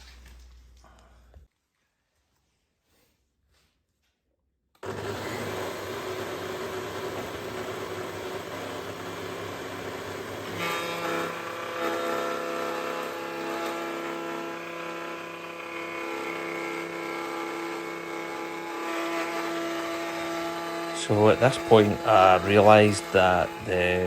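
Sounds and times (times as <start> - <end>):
router and power feeder running: 4.8 - 24.0.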